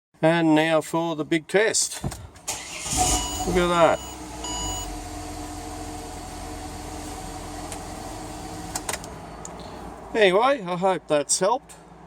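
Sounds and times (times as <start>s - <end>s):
car engine idling: 2.4s - 10.1s.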